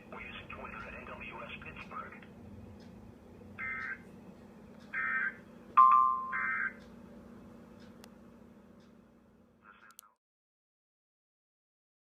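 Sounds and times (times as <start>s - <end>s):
faint radio hum: 0.0s - 2.4s, 3.5s - 4.2s, 4.9s - 5.5s, 9.5s - 10.2s.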